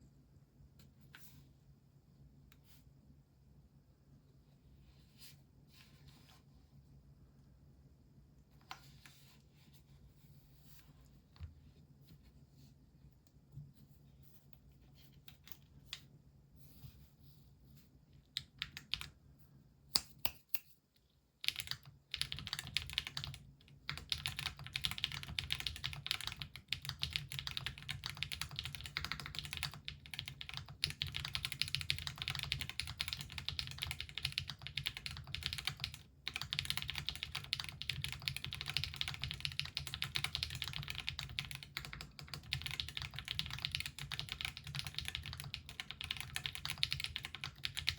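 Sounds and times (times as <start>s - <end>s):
mechanical keyboard typing: 18.4s - 19.1s, 21.4s - 47.9s.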